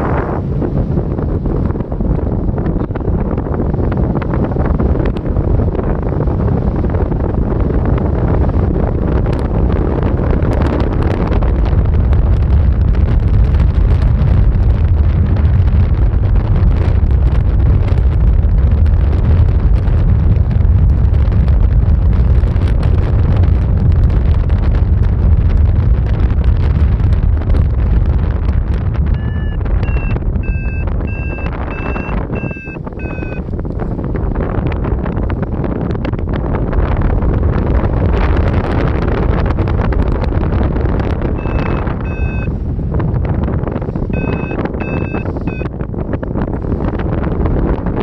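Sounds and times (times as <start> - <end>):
wind buffeting microphone: 0.0 - 48.0
short electronic beeps: 29.1 - 33.4, 41.4 - 42.5, 44.2 - 45.7.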